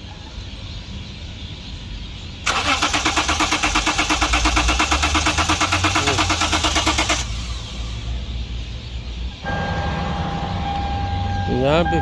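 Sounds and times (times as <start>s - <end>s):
engine cranking on starter motor: 2.5s - 8.0s.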